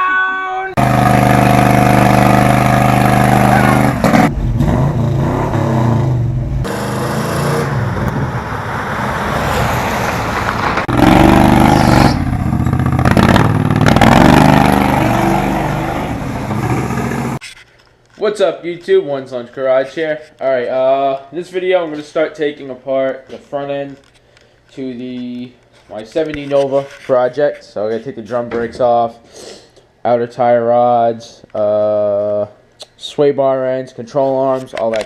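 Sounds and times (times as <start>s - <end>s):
car engine revving: 0.8s - 17.4s.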